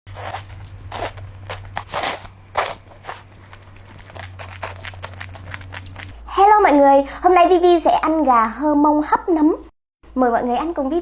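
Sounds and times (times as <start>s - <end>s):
food crunching while chewed: 0.1s - 6.2s.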